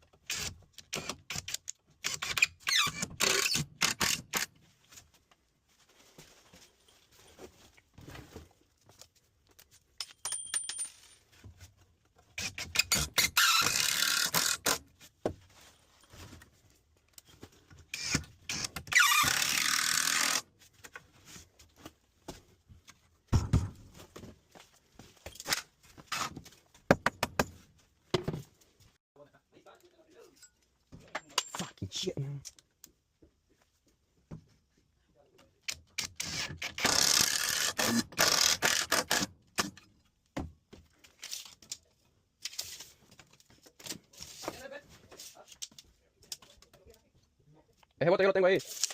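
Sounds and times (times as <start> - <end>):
metallic tool clinks and scrapes: 10.0 - 11.2, 30.2 - 31.8.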